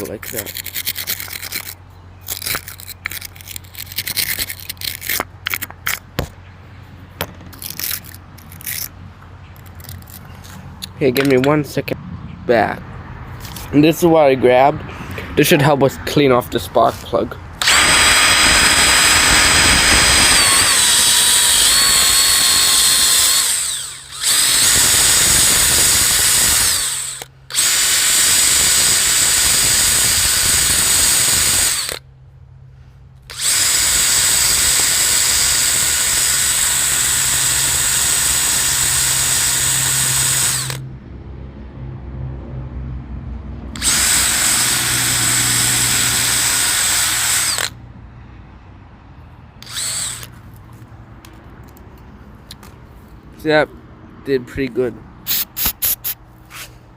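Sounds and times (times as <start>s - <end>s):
electric power tool whining: 17.6s - 32.0s, 33.3s - 40.8s, 43.8s - 47.8s, 49.6s - 50.4s.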